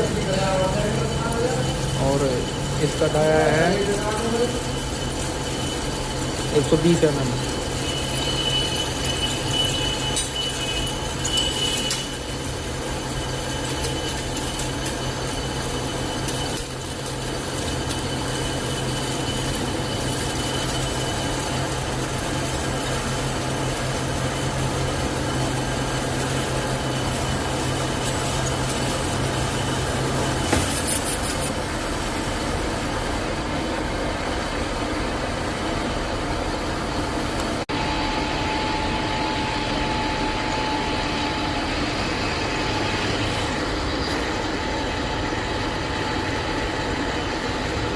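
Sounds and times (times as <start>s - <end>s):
thin high whine: 0.0s - 16.8s, 35.2s - 47.9s
lathe machining noise: 0.0s - 47.9s.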